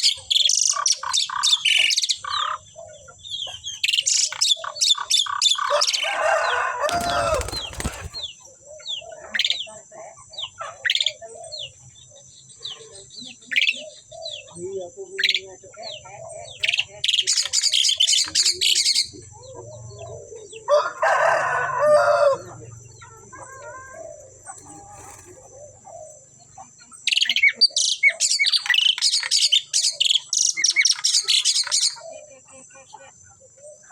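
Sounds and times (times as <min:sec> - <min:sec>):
starlings chattering: 0:00.0 - 0:33.9
harsh bird call: 0:05.7 - 0:08.4.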